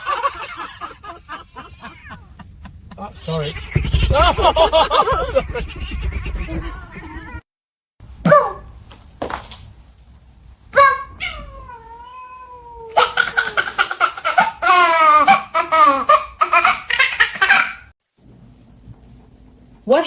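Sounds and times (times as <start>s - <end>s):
cat meowing: 1.0s - 2.4s, 10.8s - 13.4s.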